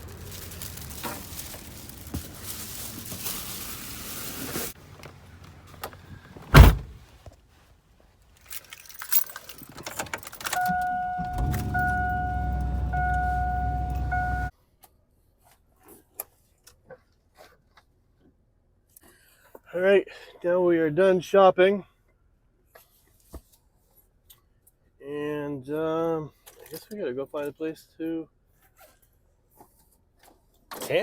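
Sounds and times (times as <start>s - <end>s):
engine running: 0.0s - 7.0s, 9.7s - 14.5s
truck door slamming: 0.2s - 7.1s, 10.0s - 14.5s
keys jangling: 8.4s - 14.5s
warning chime beeping: 10.5s - 14.5s.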